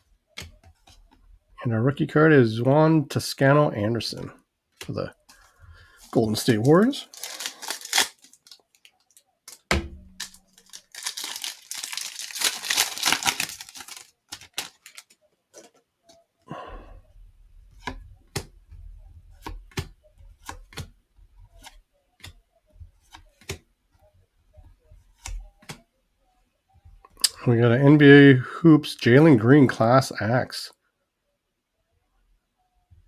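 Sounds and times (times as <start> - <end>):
cards clicking and tapping: 0.3 - 1.2, 9.5 - 15.8, 17.7 - 18.7, 19.3 - 23.7, 25.0 - 25.8
foil pack torn open: 6.2 - 15.7.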